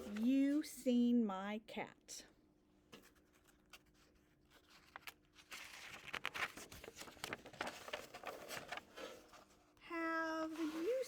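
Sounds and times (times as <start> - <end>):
book pages rustling: 3.0 - 9.6, 10.5 - 11.0.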